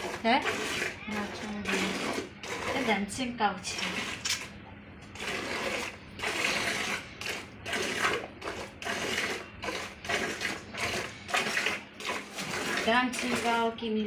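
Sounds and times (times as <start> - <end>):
milk squirting into a pail: 0.0 - 13.6.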